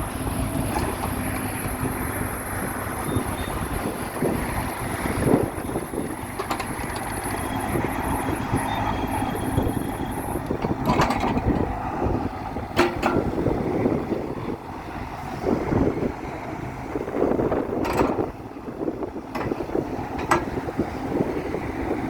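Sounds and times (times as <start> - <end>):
mini excavator running: 0.0 - 22.0
sharp metallic knocks: 12.7 - 13.4.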